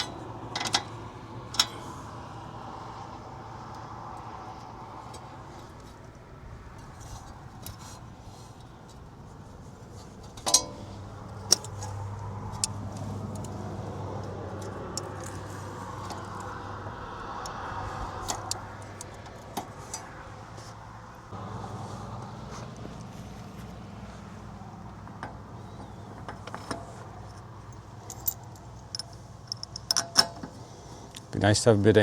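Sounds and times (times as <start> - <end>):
metal tools clinking: 0.0 - 2.0, 9.7 - 16.7, 22.5 - 31.3.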